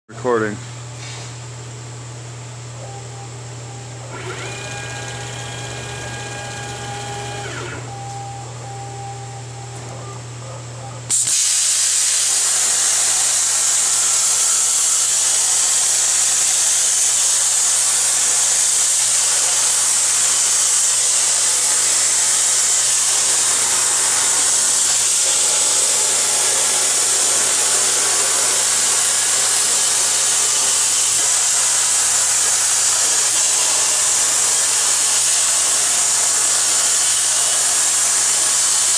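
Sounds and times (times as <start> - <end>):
machine hum with whining: 0.2 - 38.9
plasma torch hissing: 11.1 - 38.9.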